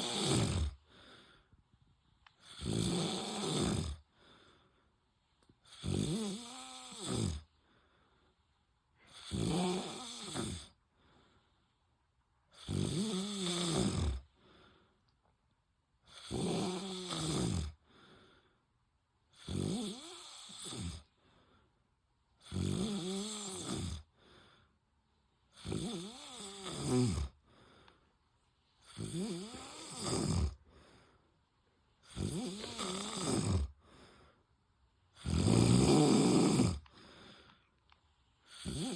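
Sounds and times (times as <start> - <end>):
man snoring: 0.0 - 0.8, 2.4 - 4.1, 5.6 - 7.5, 9.1 - 10.8, 12.5 - 14.3, 16.1 - 17.8, 19.3 - 21.2, 22.4 - 24.1, 25.5 - 27.4, 28.8 - 31.1, 32.0 - 34.0, 35.2 - 37.4, 38.5 - 38.9.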